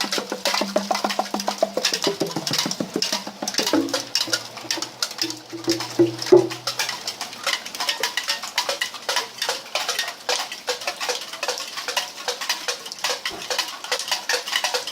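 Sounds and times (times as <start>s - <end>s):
raindrops dripping on metal can: 0.0s - 14.9s.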